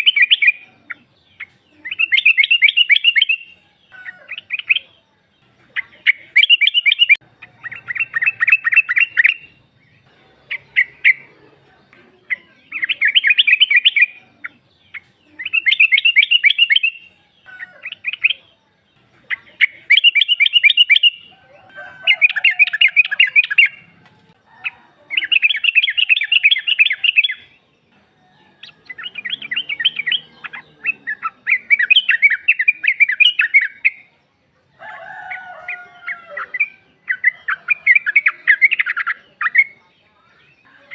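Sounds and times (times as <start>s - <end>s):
bird chattering call: 0.0s - 4.9s, 5.6s - 18.5s, 19.2s - 24.1s, 25.1s - 27.6s, 28.5s - 34.1s.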